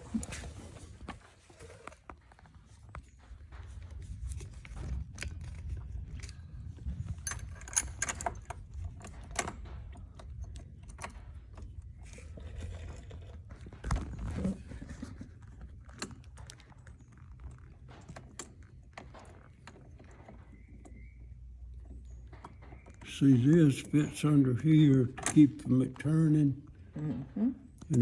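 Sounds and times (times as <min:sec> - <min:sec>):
metal parts and tools clinking: 0:04.8 - 0:11.4.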